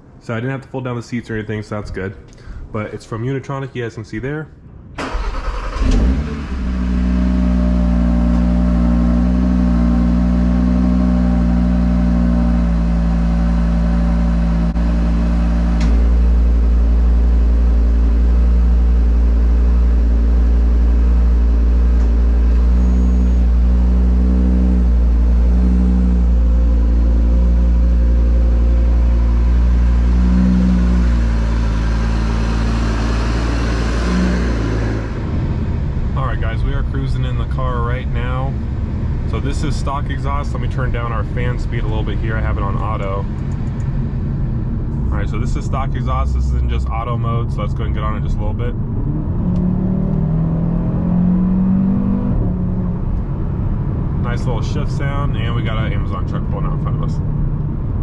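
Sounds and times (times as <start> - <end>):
car engine drone from cabin: 4.7 - 58.0.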